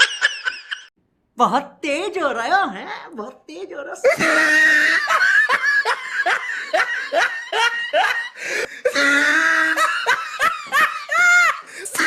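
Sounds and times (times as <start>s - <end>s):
person laughing: 4.0s - 12.0s.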